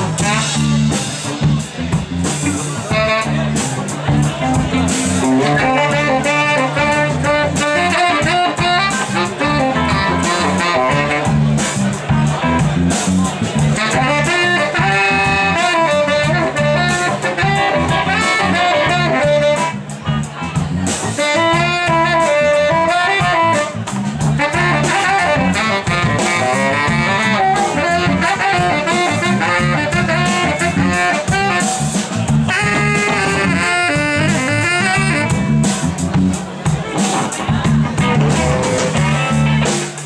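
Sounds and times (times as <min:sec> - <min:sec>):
saxophone melody: 0:00.0 - 0:12.8, 0:13.6 - 0:40.0
live band playing: 0:00.0 - 0:40.0.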